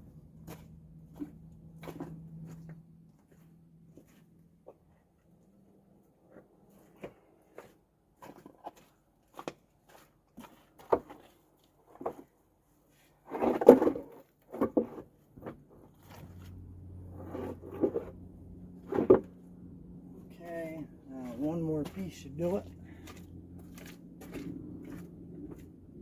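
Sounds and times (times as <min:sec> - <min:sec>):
low steady hum: 0:13.8 - 0:26.0.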